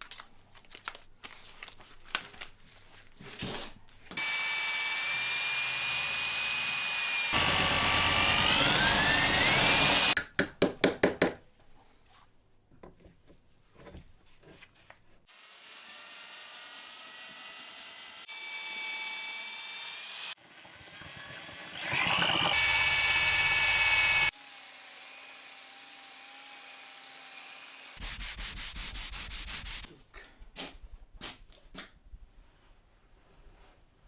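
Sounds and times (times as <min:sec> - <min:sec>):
power tool whining: 0:04.2 - 0:10.2, 0:15.4 - 0:28.0
sanding strokes on wood: 0:26.4 - 0:29.9.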